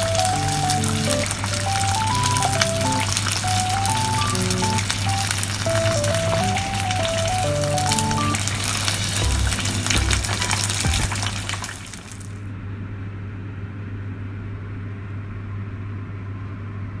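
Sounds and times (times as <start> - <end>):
chicken sizzling in hot oil: 0.0 - 12.4.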